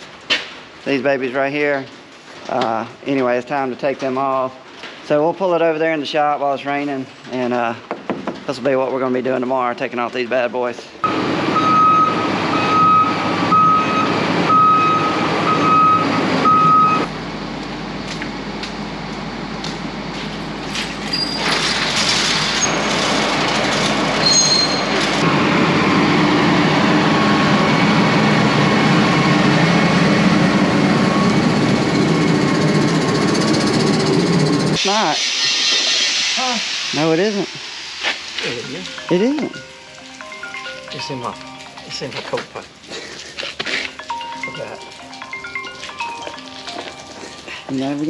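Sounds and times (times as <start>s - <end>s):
reversing alarm beeping: 11.0s - 17.1s, 24.2s - 34.8s
machine engine running: 11.0s - 20.8s, 21.7s - 34.8s
high squeaks: 21.0s - 25.2s.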